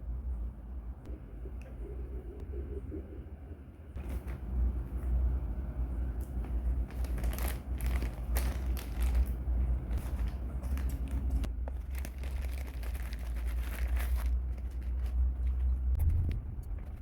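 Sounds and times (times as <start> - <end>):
steady low hum: 0.0 - 17.0
plastic packaging crinkling: 6.9 - 15.8.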